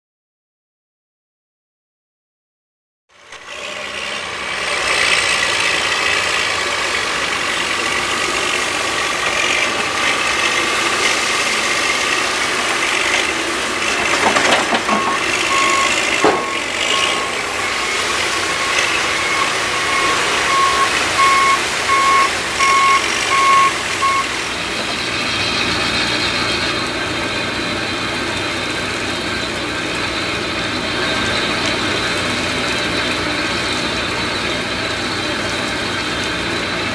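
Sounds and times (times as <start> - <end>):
heavy machinery engines running: 3.1 - 36.9
backup alarm beeping: 14.7 - 17.8, 18.4 - 24.3.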